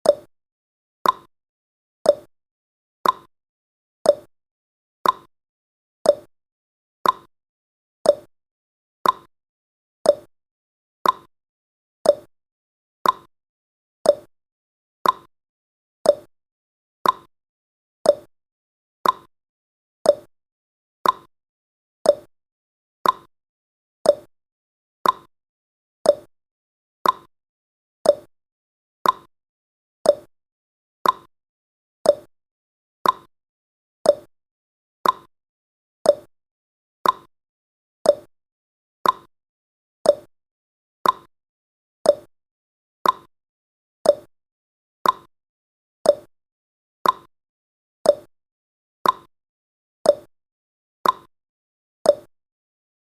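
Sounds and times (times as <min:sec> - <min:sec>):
clock ticking: 0:09.0 - 0:09.3, 0:27.0 - 0:27.3, 0:33.0 - 0:33.3, 0:35.0 - 0:35.3, 0:37.0 - 0:37.3, 0:39.0 - 0:39.3, 0:41.0 - 0:41.3, 0:43.0 - 0:43.3, 0:45.0 - 0:45.3, 0:47.0 - 0:47.3, 0:49.0 - 0:49.3, 0:51.0 - 0:51.3.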